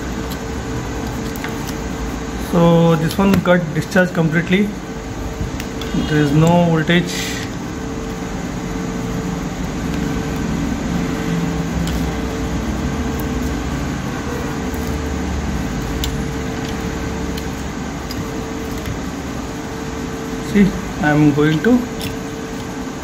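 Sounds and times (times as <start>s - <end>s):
mechanical hum: 0.0s - 23.0s.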